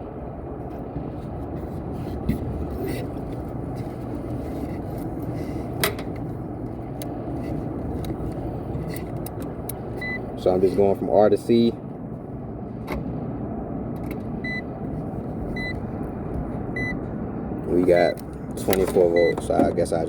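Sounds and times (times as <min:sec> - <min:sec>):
hvac equipment rumbling: 0:00.0 - 0:20.0.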